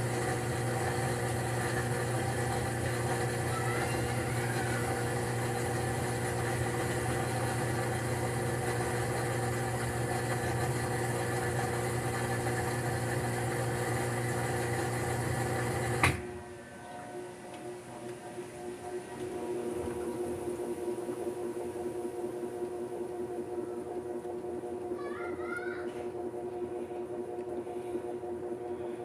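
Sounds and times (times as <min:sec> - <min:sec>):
drain pump working: 0:00.0 - 0:16.2
washing machine spinning: 0:00.0 - 0:16.6, 0:17.7 - 0:29.0.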